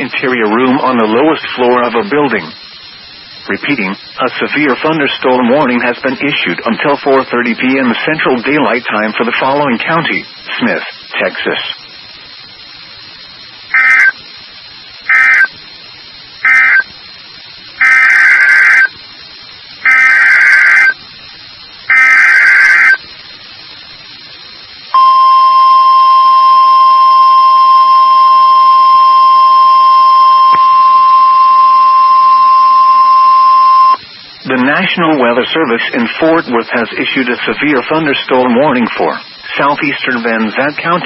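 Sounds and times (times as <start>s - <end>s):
buzzy data bursts: 0.0s - 41.0s
loud steady attention tone: 13.7s - 14.3s, 15.0s - 15.7s, 16.4s - 17.0s, 17.8s - 19.0s, 19.8s - 21.0s, 21.8s - 23.0s, 24.9s - 35.2s.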